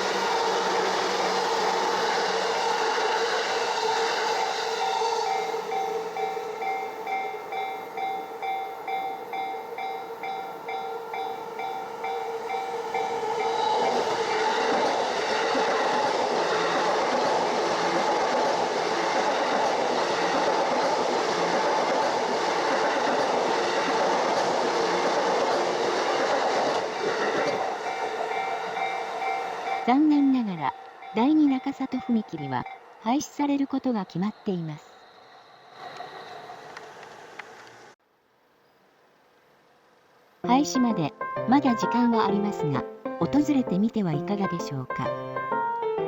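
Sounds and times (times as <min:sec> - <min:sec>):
train passing over crossing: 0:00.0 - 0:38.0
level crossing bell ringing: 0:40.6 - 0:46.0.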